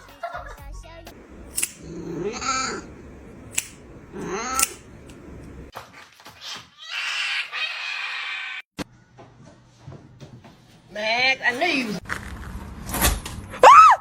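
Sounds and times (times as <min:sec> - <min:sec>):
sharp clicks: 0:01.2 - 0:05.7.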